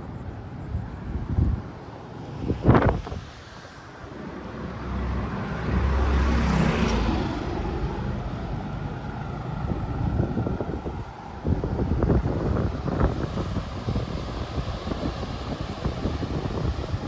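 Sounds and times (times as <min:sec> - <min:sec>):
motor engine passing by: 0:03.7 - 0:12.1.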